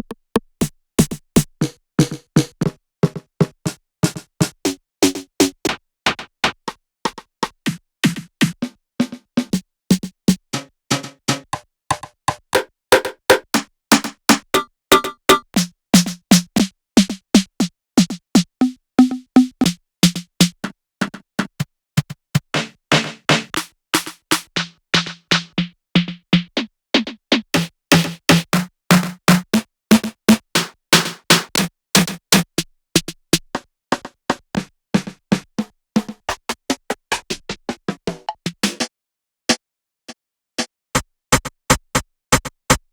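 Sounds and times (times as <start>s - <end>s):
short snare drum hits: 13.0s - 16.7s, 27.6s - 32.5s.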